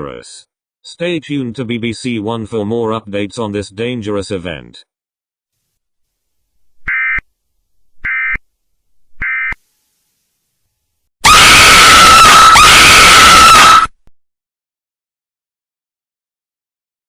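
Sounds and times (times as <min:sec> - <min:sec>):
loud harsh screeching: 0:11.2 - 0:13.9.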